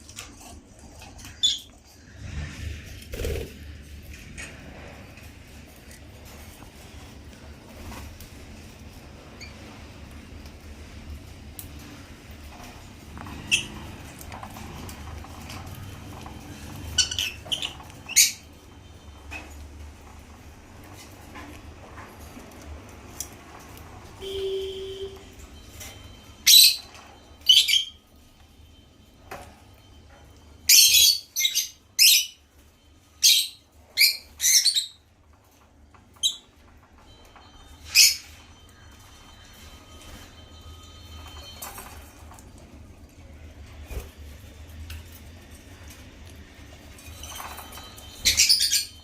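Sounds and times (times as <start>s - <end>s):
lovebirds shrill chirps: 16.8s - 18.5s, 26.4s - 28.0s, 30.6s - 32.4s, 33.2s - 35.0s, 48.0s - 49.0s.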